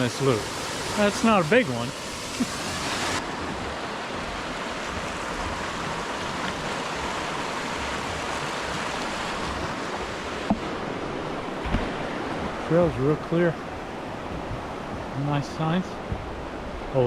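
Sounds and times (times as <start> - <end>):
small waterfall rushing: 0.0 - 17.0.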